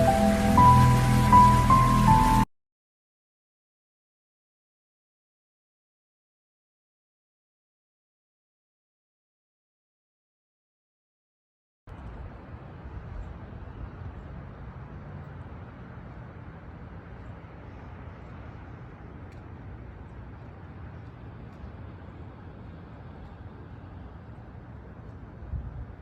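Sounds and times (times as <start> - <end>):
steady low rumble: 0.0 - 2.5, 11.9 - 26.0.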